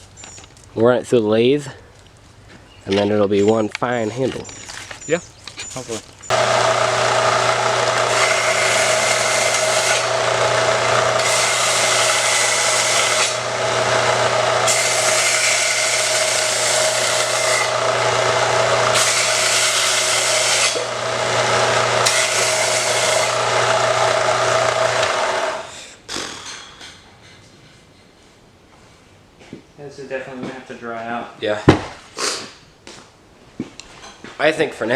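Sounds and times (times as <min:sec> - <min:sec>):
motor winding down: 0:06.3 - 0:25.7
tool scraping spinning wood: 0:06.3 - 0:25.8
wood lathe motor hum: 0:06.3 - 0:25.8.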